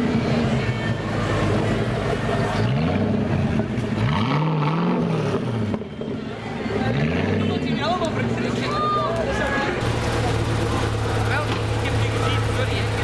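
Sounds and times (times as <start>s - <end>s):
sports car engine revving: 1.6s - 5.8s.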